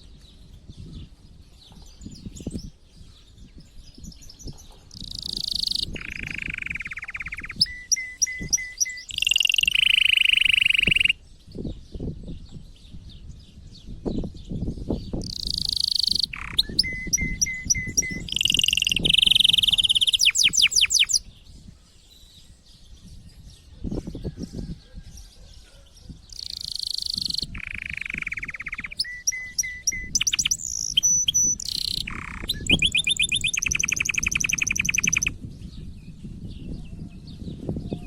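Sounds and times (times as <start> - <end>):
canary singing trills: 1.8 - 11.2, 15.0 - 21.5, 24.7 - 35.4.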